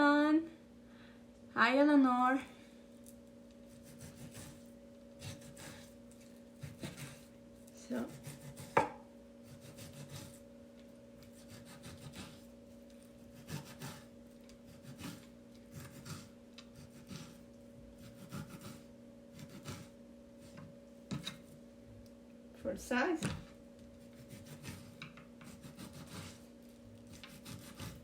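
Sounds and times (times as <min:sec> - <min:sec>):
steady low hum: 0:00.0 - 0:28.0
knife slicing raw meat: 0:03.7 - 0:07.3, 0:08.0 - 0:10.4, 0:11.2 - 0:12.5, 0:13.2 - 0:17.4, 0:18.0 - 0:21.4, 0:24.1 - 0:28.0.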